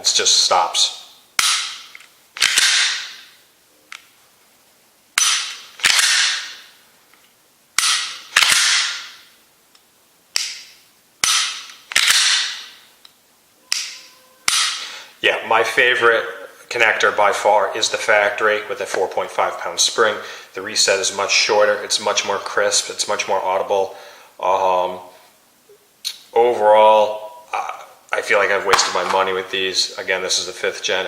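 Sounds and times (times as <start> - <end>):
pistol slide racking: 1.4 - 3.2, 5.2 - 6.6, 7.8 - 9.1.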